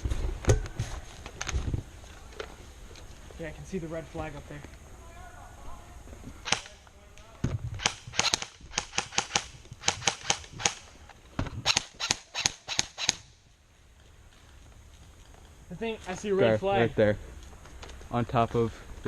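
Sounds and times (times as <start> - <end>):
airsoft gun shots: 6.4 - 6.8, 7.8 - 10.9, 11.6 - 13.3.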